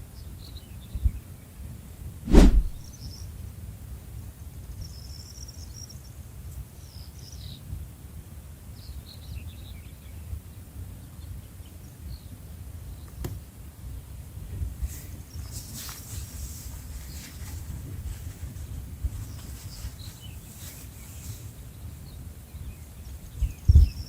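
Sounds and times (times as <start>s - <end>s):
sharp click: 2.3s - 2.8s
steady low rumble: 2.3s - 2.9s.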